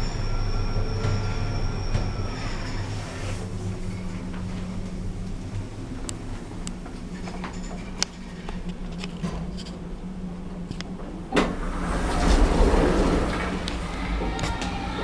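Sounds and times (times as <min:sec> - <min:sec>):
lift humming: 0:00.0 - 0:15.0
rush of noise: 0:11.3 - 0:15.0.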